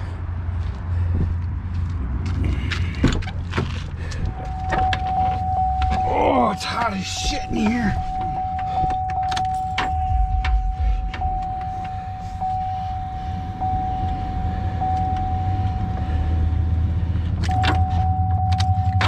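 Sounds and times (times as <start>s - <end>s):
ignition keys clicking and jangling: 2.6s - 16.0s, 17.1s - 19.0s
low hum: 4.0s - 19.0s
pulsing dashboard warning chime: 4.3s - 19.0s.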